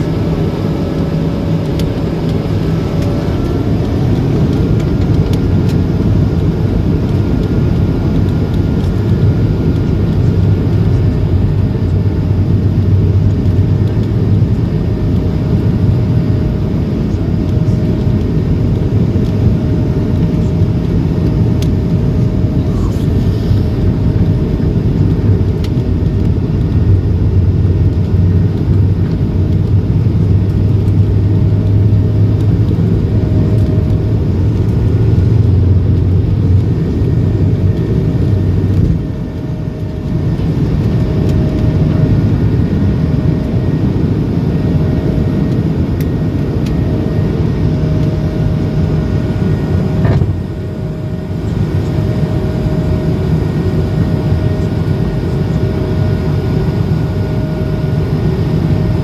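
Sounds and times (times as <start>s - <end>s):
jet engine rumble: 0.0s - 59.0s.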